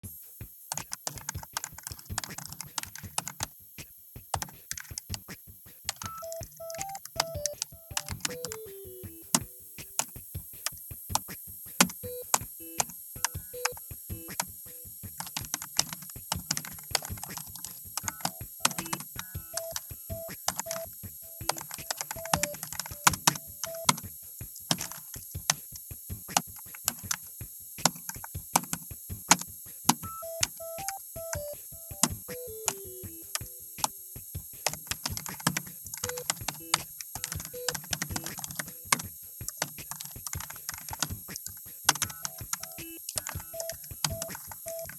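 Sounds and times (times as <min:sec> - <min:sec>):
keyboard key clicks: 0:05.9 - 0:08.8, 0:15.2 - 0:24.1, 0:34.7 - 0:44.9
short beeping tones: 0:30.0 - 0:33.7.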